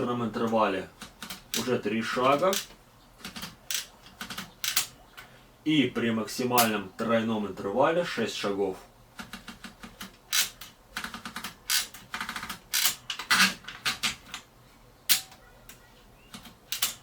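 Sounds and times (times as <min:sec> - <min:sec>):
typewriter platen ratchet clicking: 0:01.0 - 0:05.0, 0:09.2 - 0:14.4, 0:16.4 - 0:17.0.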